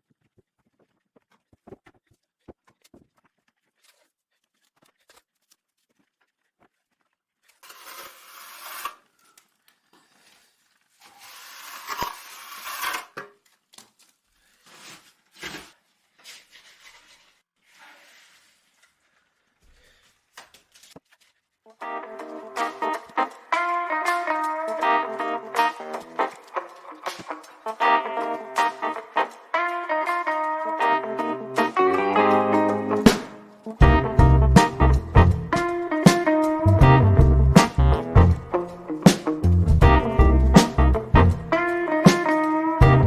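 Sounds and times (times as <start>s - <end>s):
hand tool scraping stone mortar: 1.8s - 13.5s, 14.6s - 19.0s.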